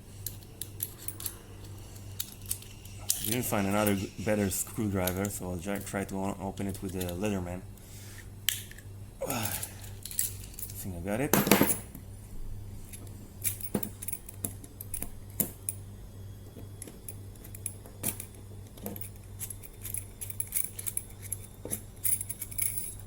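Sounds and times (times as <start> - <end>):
low steady hum: 0.0 - 23.0
padlock parts clinking and clicking: 0.2 - 4.1, 6.6 - 7.4, 8.5 - 12.0, 12.9 - 15.9, 16.5 - 23.0.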